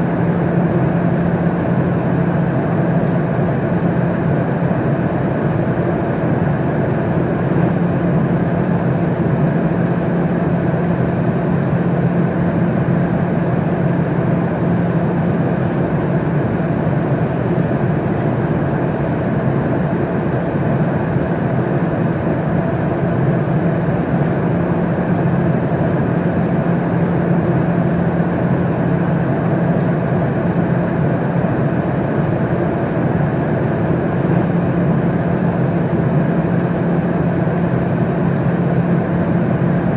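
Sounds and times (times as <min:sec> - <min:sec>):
airliner cabin noise: 0:32.8 - 0:39.9.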